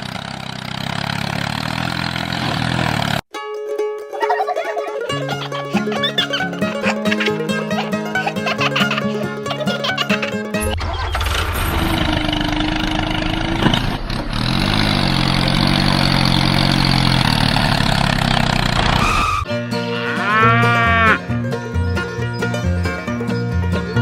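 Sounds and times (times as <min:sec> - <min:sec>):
small engine running: 0:00.0 - 0:03.2, 0:05.1 - 0:19.5
plucked banjo music: 0:02.4 - 0:11.0, 0:19.5 - 0:24.0
cow mooing: 0:19.8 - 0:21.3.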